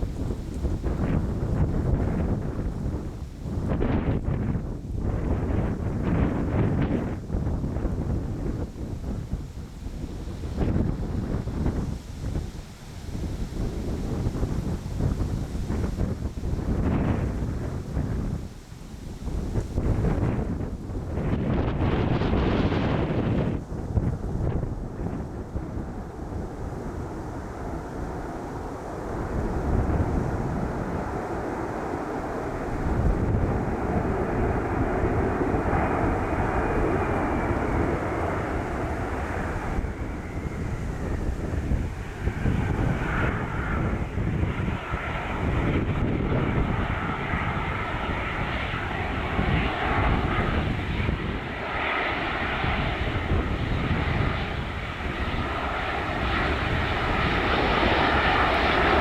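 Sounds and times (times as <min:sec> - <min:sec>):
airplane engines passing: 0:00.0 - 0:59.0
wind rumbling on microphone: 0:00.0 - 0:59.0.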